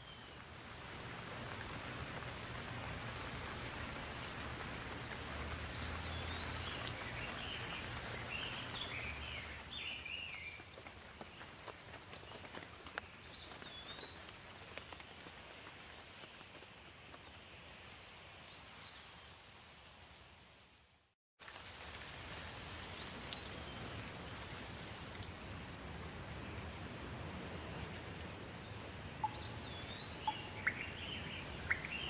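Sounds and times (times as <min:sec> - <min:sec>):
steady rain falling: 0:00.0 - 0:20.8, 0:21.4 - 0:32.0
small bird chirping: 0:29.2 - 0:32.0.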